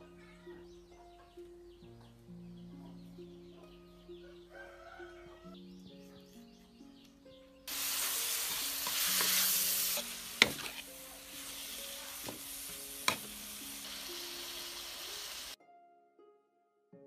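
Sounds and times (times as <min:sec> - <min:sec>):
food sizzling in a pan: 0:07.7 - 0:15.6
utensil striking a pan: 0:08.0 - 0:10.9, 0:12.2 - 0:13.4.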